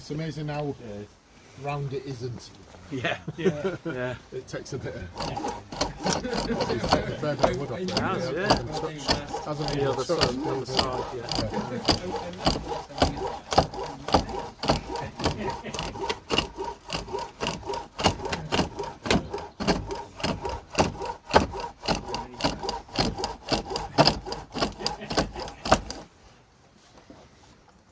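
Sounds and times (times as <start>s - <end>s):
chisel scraping wood on lathe: 4.6s - 26.2s.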